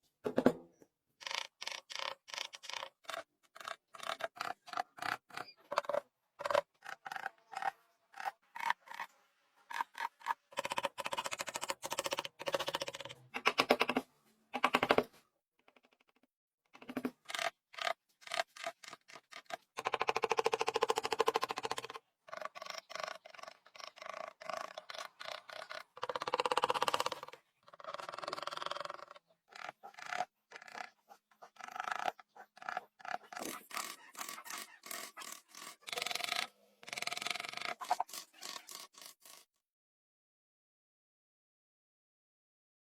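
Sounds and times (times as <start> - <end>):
wood being filed or sanded: 29.5 - 36.1, 37.2 - 39.5.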